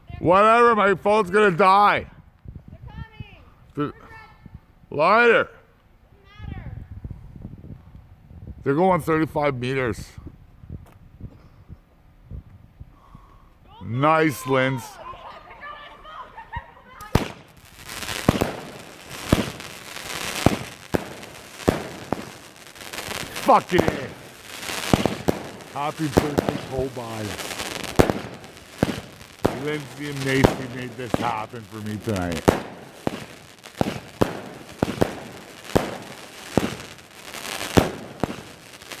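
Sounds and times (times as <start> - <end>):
firework crackling: 14.1 - 39.0
firework bangs: 16.3 - 39.0.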